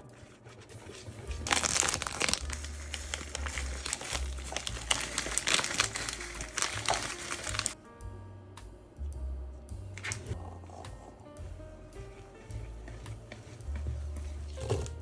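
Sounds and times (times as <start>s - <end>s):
background music: 0.0s - 15.0s
crinkling and crackling: 0.8s - 7.8s, 12.6s - 15.0s.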